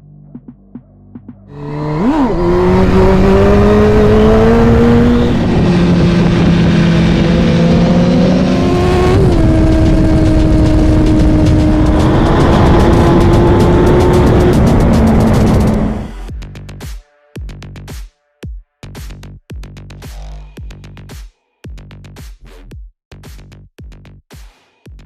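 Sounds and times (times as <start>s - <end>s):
motorcycle engine revving and accelerating: 1.5s - 16.3s.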